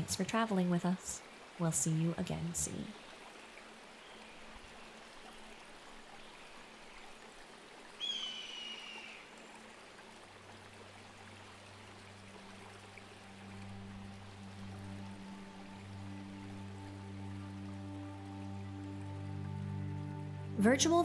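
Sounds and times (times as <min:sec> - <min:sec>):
flowing river water: 0:00.0 - 0:21.0
low sustained music tones: 0:08.9 - 0:21.0.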